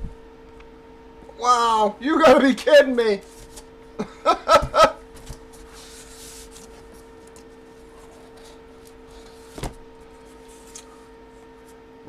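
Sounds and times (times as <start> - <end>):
electrical hum: 0.0 - 12.0
paper packaging rustling: 3.2 - 3.7, 5.1 - 11.0.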